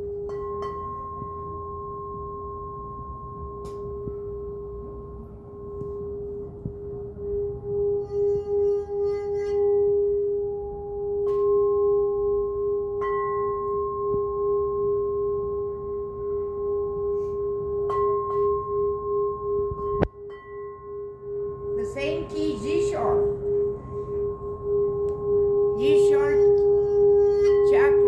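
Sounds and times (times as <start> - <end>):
singing bowl steady tone: 0.0 - 28.0
singing bowls struck: 16.6 - 28.0.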